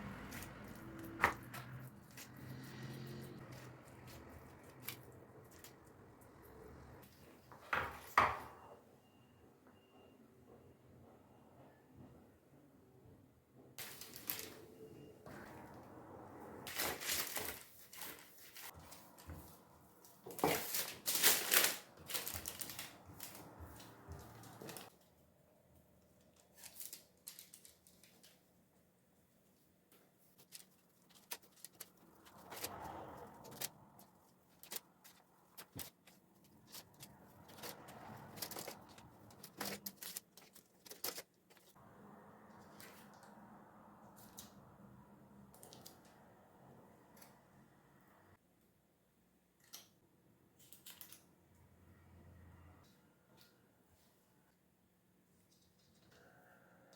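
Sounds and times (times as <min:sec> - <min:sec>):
scraping and crunching handling: 0:30.3 - 0:41.8.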